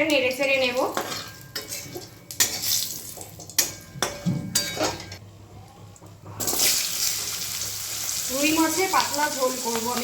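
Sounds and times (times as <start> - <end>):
oil sizzling: 6.4 - 10.0.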